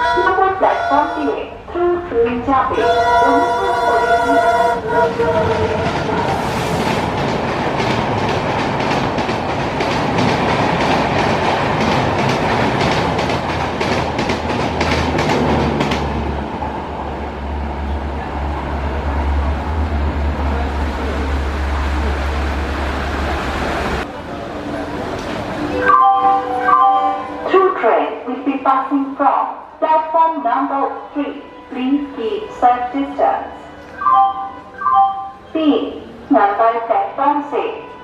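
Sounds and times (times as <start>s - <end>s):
train passing at speed: 0.0s - 38.0s
train wheels clicking over rail joints: 5.0s - 16.4s.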